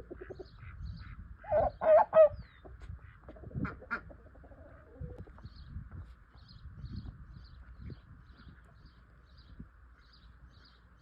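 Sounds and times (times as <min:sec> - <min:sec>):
ducks calling: 0:00.0 - 0:05.0.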